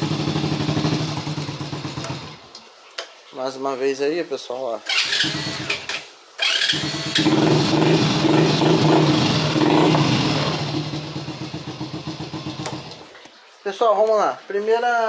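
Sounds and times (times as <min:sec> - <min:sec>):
motorcycle engine revving: 0:00.0 - 0:02.5, 0:04.9 - 0:13.1
electric starter motor: 0:04.9 - 0:10.4.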